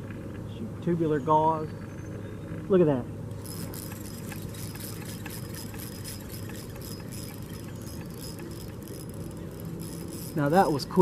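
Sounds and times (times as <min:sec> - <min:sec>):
fishing reel clicks: 0:03.3 - 0:11.0.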